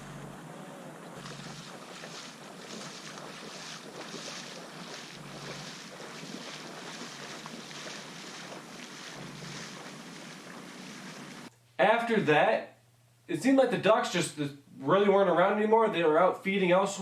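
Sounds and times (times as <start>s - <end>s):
footsteps swishing through water: 0.0s - 11.5s.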